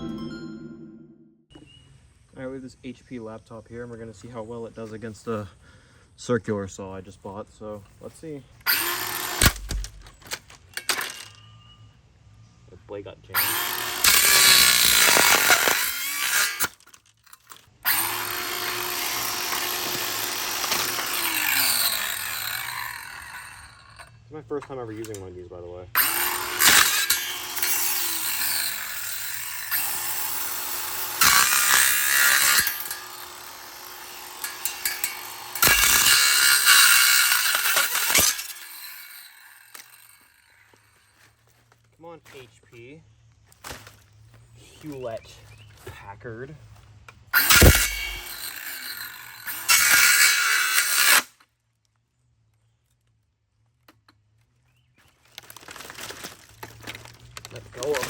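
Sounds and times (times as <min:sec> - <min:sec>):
circular saw cutting casing: 0:08.6 - 0:11.4, 0:13.4 - 0:24.1, 0:26.0 - 0:41.0, 0:47.4 - 0:51.3.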